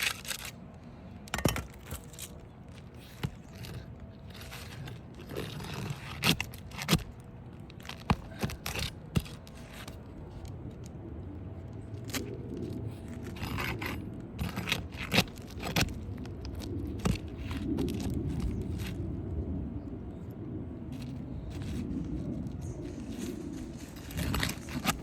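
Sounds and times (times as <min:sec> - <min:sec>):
shingles scraping on roof: 0:01.6 - 0:10.0, 0:13.0 - 0:19.0, 0:22.9 - 0:25.0.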